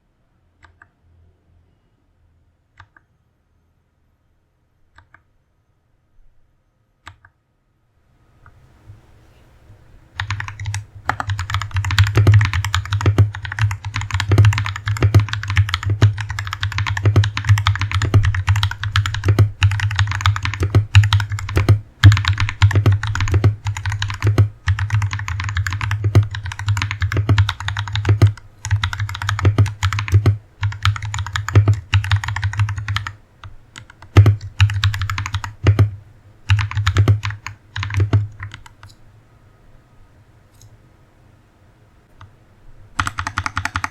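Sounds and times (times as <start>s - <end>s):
mechanical keyboard typing: 10.2s - 33.2s, 33.8s - 38.9s, 43.0s - 43.9s.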